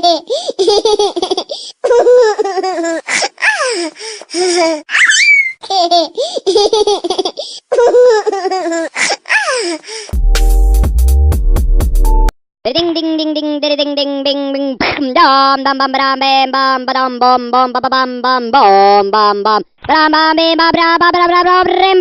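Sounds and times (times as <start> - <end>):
child laughing and squealing: 0.0 - 10.0
electronic music with heavy bass: 10.2 - 12.3.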